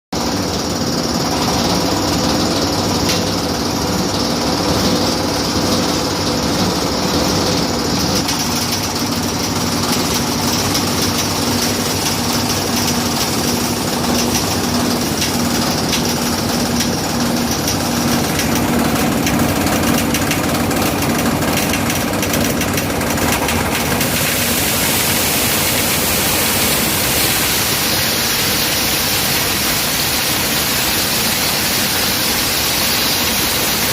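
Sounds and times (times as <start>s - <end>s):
hammer mill machine humming: 0.2s - 33.9s.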